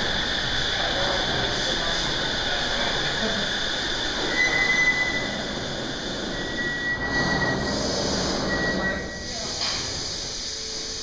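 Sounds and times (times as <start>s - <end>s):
suspended train rumbling: 0.0s - 11.0s
high-pitched wheel squeal: 4.2s - 9.3s.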